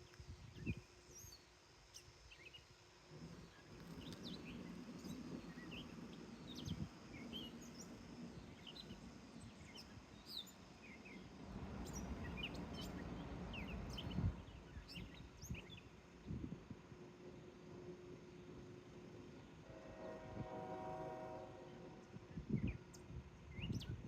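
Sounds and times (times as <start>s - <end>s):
low background rumble: 3.1s - 19.5s.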